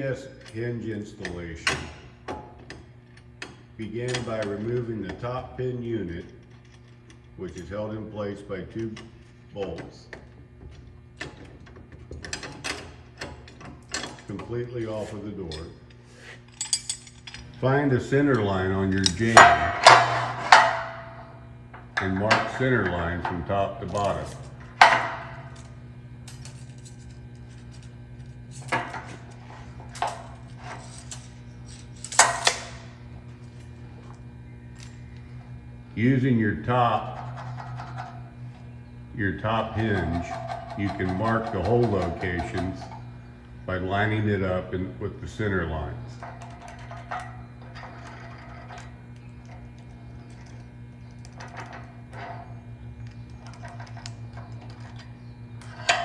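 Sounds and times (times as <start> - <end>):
steady low hum: 0.0 - 56.0
tools tapping and clinking: 16.5 - 17.6, 18.3 - 27.9, 28.5 - 32.8, 39.8 - 43.1, 46.2 - 56.0.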